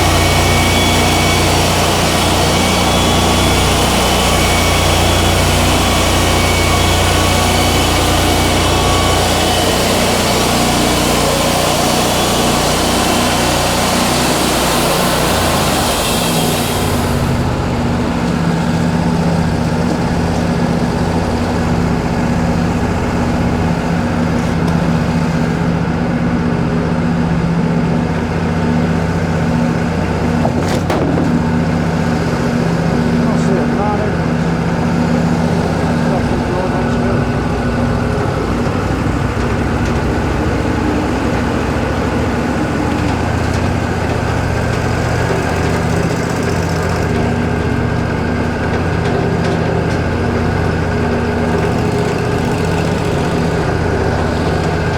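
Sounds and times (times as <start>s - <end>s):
sawmill blade cutting log: 0.0s - 25.8s, 27.9s - 54.9s
sawmill engine running: 0.0s - 54.9s.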